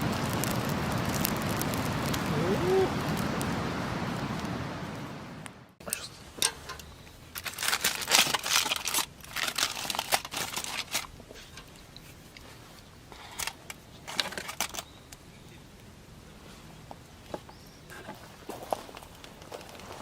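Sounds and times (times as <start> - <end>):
material crinkling and rustling: 6.4 - 14.9, 17.3 - 20.0.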